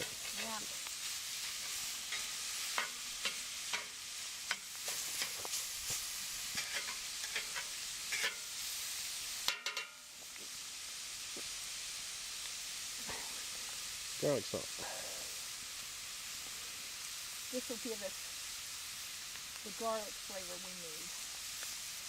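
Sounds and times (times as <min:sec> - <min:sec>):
meat sizzling in a skillet: 0:00.0 - 0:22.0
utensil scraping a pan: 0:01.4 - 0:08.5.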